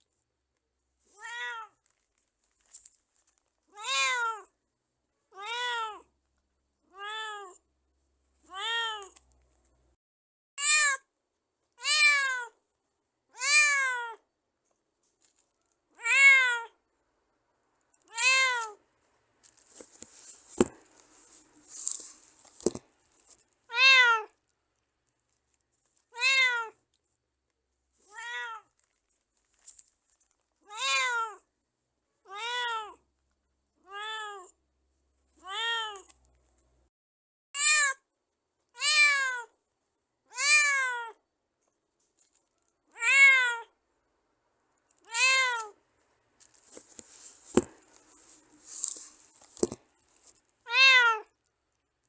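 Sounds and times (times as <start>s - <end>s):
cat meowing: 1.2s - 1.8s, 3.7s - 4.5s, 5.3s - 6.1s, 6.9s - 7.6s, 8.5s - 9.2s, 13.4s - 14.2s, 16.0s - 16.8s, 18.1s - 18.8s, 23.7s - 24.3s, 26.1s - 26.8s, 28.1s - 28.7s, 30.6s - 31.4s, 32.3s - 33.0s, 33.8s - 34.5s, 35.4s - 36.1s, 38.8s - 39.5s, 40.3s - 41.2s, 42.9s - 43.7s, 45.0s - 45.8s, 50.7s - 51.3s
faint rustling: 18.6s - 23.7s, 26.8s - 30.7s, 46.0s - 50.6s.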